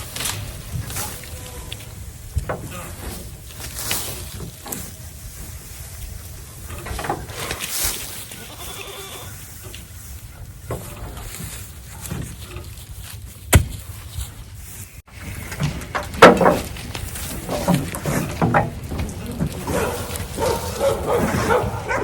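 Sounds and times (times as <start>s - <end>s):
rustling: 0.0s - 22.0s
farm animals bleating: 0.9s - 2.0s, 7.4s - 9.6s.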